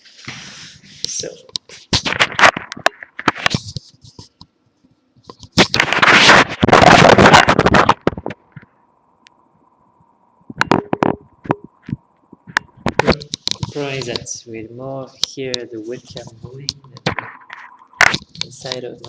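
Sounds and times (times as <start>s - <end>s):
webcam scraping rustle: 5.2s - 8.2s, 12.6s - 14.4s, 15.2s - 19.0s
microphone handling clicks and knocks: 5.2s - 8.7s, 10.5s - 14.3s, 15.2s - 19.0s.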